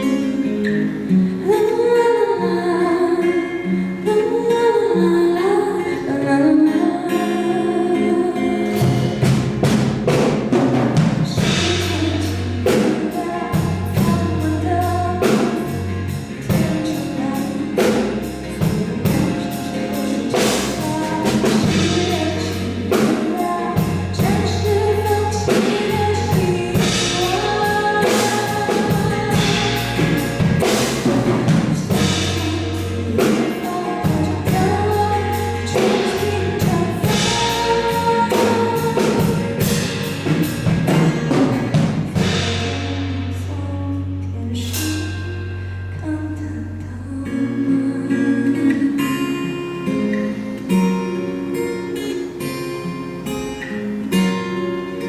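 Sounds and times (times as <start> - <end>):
live band playing a song: 8.7 - 43.6.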